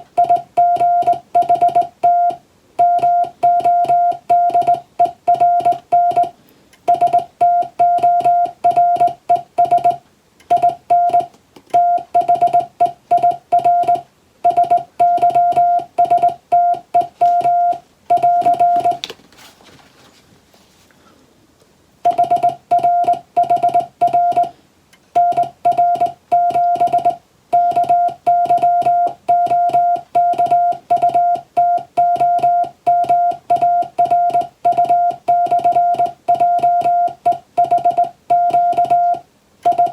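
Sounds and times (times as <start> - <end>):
morse code beeps: 0.0 - 19.0, 22.0 - 24.6, 25.2 - 39.9
faint hiss: 6.3 - 6.9.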